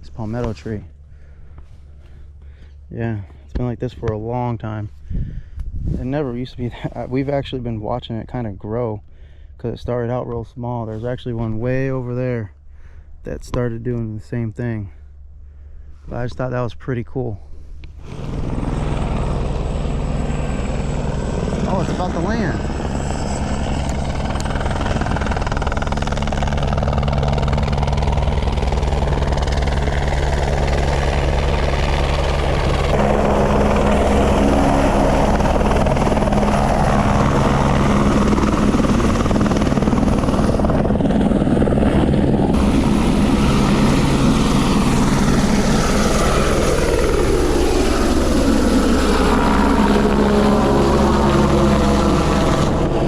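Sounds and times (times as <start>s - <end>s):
helicopter rotor and engine: 17.4s - 53.0s.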